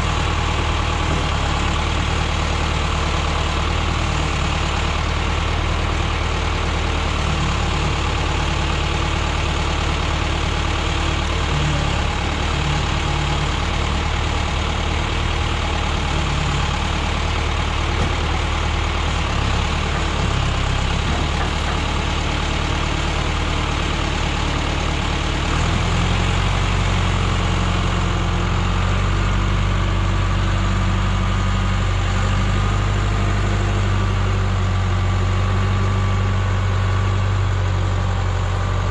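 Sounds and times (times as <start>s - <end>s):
diesel engine running: 0.0s - 38.9s.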